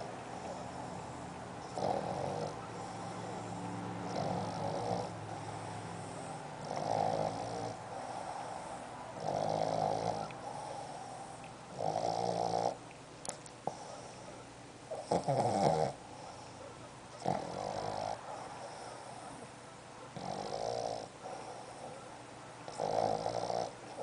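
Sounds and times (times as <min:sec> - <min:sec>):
wheezy breaths: 0:00.0 - 0:06.7, 0:07.7 - 0:09.2, 0:10.2 - 0:11.6
pet snoring: 0:00.0 - 0:14.2, 0:14.9 - 0:16.4, 0:17.2 - 0:19.4, 0:20.2 - 0:22.0, 0:22.7 - 0:24.0.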